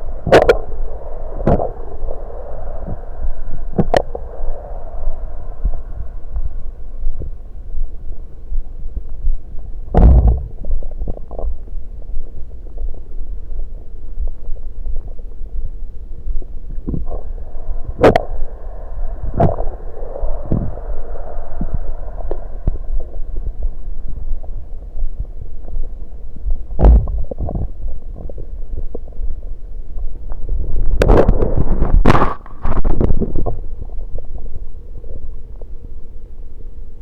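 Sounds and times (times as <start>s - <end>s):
sharp stomach gurgles: 0.0s - 7.4s, 9.9s - 15.3s, 16.7s - 25.1s, 26.7s - 28.5s, 30.4s - 34.5s
stomach rumbling: 0.0s - 36.6s.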